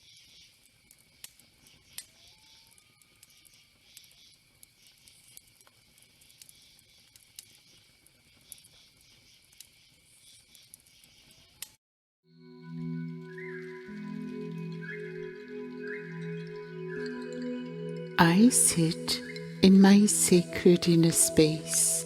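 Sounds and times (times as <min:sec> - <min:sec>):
small ticks: 0:00.0 - 0:11.8
thin high tone: 0:12.4 - 0:22.0.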